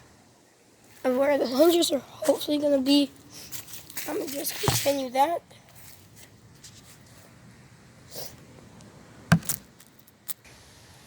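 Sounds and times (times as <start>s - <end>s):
sharp knock: 9.3s - 9.6s.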